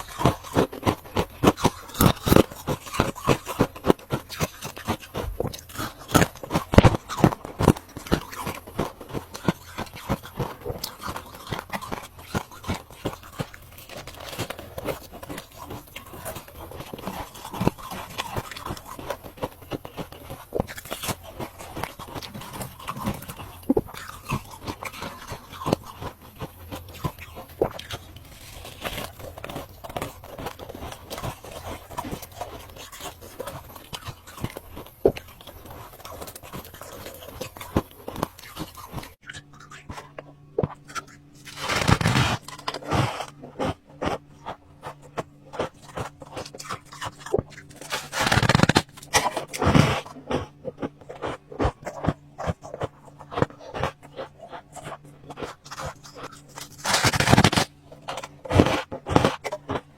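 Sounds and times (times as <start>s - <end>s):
faint steady hum: 0.0s - 59.9s
ice cubes being crunched: 0.0s - 59.9s.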